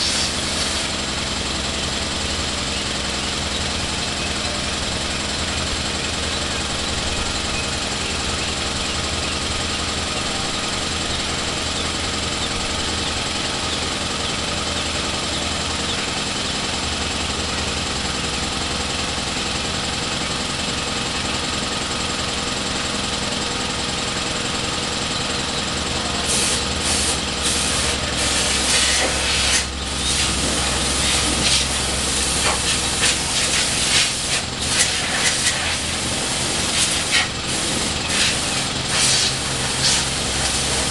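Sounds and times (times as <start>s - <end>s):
air hose hissing: 0.0s - 0.8s, 26.3s - 40.9s
engine hum: 0.0s - 40.9s.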